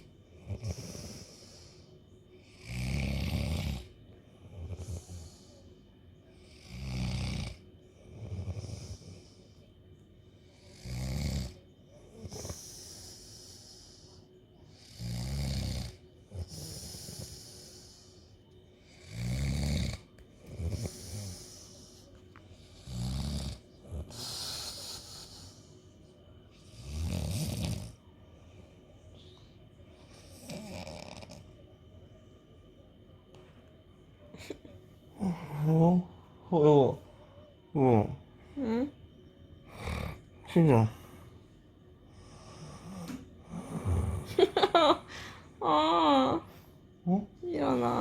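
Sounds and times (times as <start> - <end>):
man snoring: 0.0 - 1.8, 2.5 - 3.9, 6.5 - 9.3, 10.6 - 11.6, 14.7 - 18.1, 18.9 - 21.9, 22.8 - 25.6, 26.7 - 28.0, 30.3 - 31.4, 39.7 - 41.0, 42.3 - 44.3.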